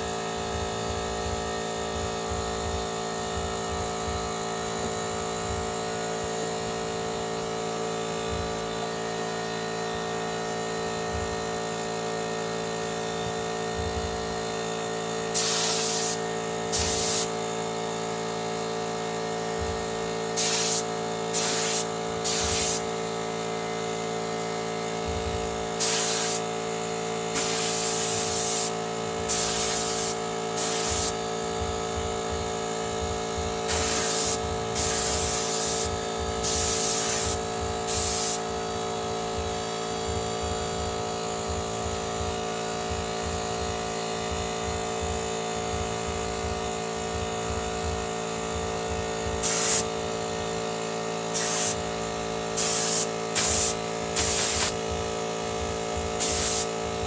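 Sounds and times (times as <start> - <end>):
air compressor humming: 0.0 - 57.0
compressed air hissing: 15.3 - 17.5, 20.3 - 22.9, 25.8 - 31.2, 33.7 - 38.4, 49.4 - 50.0, 51.3 - 55.0, 56.2 - 56.8.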